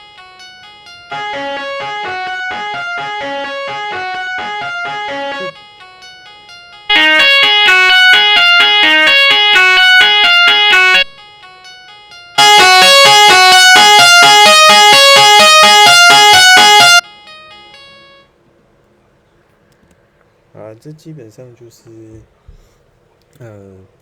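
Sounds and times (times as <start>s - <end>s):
fuzz electric guitar notes: 1.0s - 11.6s.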